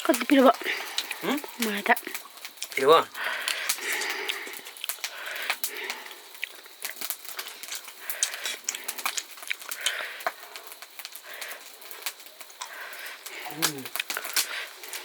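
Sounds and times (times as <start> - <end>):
slurping and chewing noodles: 0.5 - 2.8, 3.4 - 12.0, 12.6 - 15.0
hissing breaths drawn in: 3.1 - 6.6, 7.2 - 15.0.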